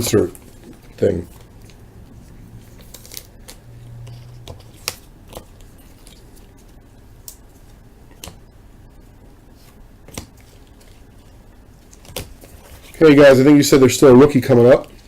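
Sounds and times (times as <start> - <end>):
cards clicking and tapping: 2.7 - 6.2, 8.1 - 8.4, 10.0 - 11.0, 11.9 - 12.9.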